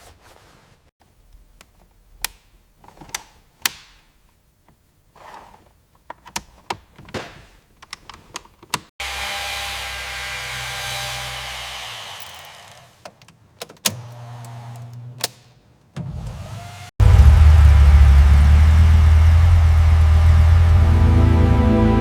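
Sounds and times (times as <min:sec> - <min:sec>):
power tool whirring: 0:09.0 - 0:13.0.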